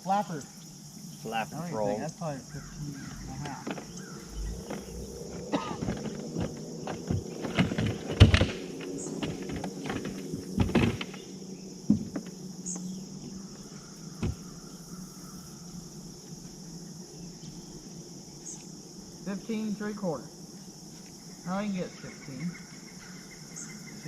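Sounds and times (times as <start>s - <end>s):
crickets chirping: 0.0s - 24.0s
knocks and scrapes: 3.3s - 11.3s, 11.9s - 12.4s.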